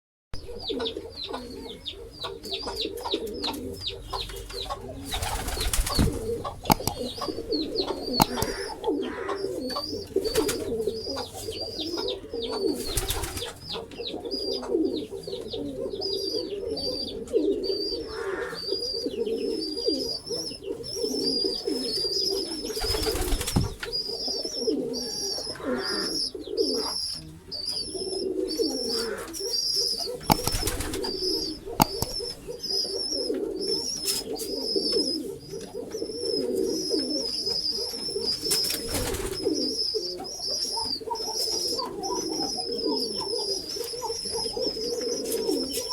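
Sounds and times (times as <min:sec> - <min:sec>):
pigeons cooing: 0:00.4 - 0:45.9
high rapid chirping: 0:05.2 - 0:09.0, 0:30.2 - 0:32.7.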